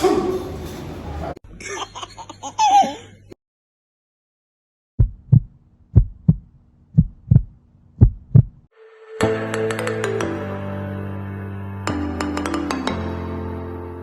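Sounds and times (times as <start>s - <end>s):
heartbeat double beats: 5.0s - 8.7s.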